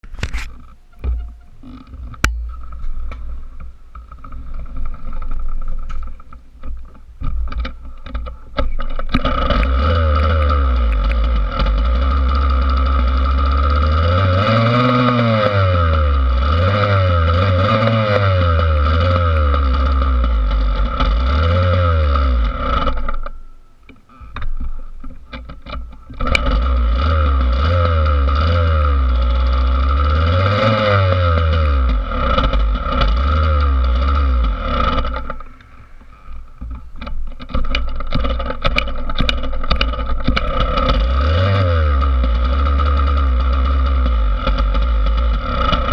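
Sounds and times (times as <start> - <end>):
scattered clicks and knocks: 0.0 - 45.9
dirt bike engine revving: 8.8 - 23.3, 25.4 - 45.9.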